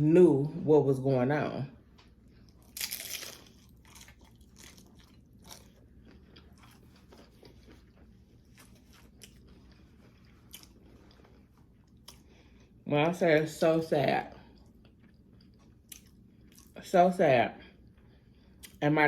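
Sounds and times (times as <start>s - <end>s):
faint chewing: 1.9s - 12.8s, 14.3s - 16.8s, 17.7s - 18.8s
biting crunchy taco shell: 2.4s - 12.3s.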